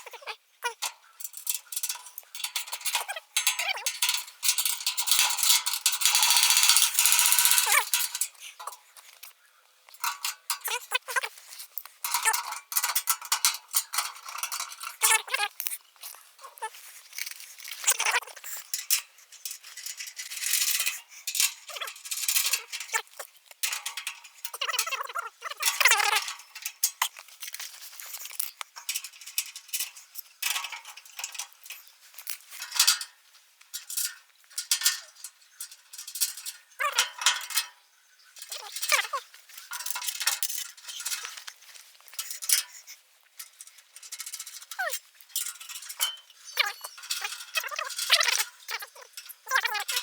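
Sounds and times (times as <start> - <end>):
metallic clinks and rattles of tools: 0.0 - 9.3, 9.9 - 33.1, 33.8 - 37.7, 38.4 - 50.0
short squeaks: 45.8 - 50.0.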